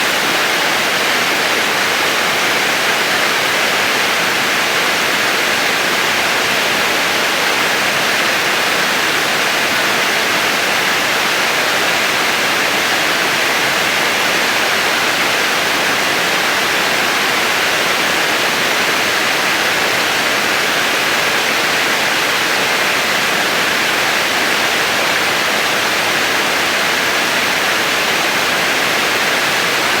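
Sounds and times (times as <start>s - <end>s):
stream water rushing: 0.0s - 30.0s.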